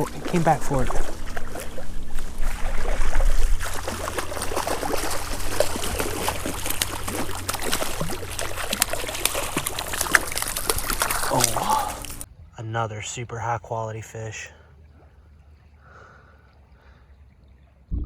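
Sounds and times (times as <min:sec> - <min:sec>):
low rumble: 0:00.0 - 0:07.4
fish thrashing in water: 0:00.0 - 0:12.3
creek water splashing and trickling: 0:00.0 - 0:17.9.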